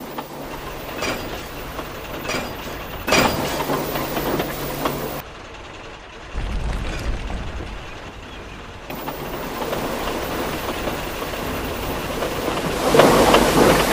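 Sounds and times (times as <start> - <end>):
low hum: 0.0 - 13.9
coal crunching and rattling: 6.3 - 13.9.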